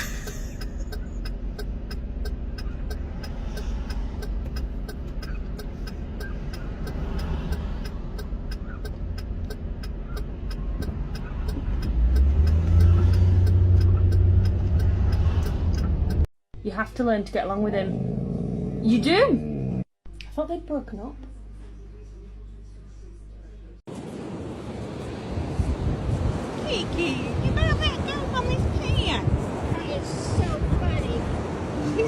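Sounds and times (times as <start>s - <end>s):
car engine rumbling: 0.0s - 18.1s.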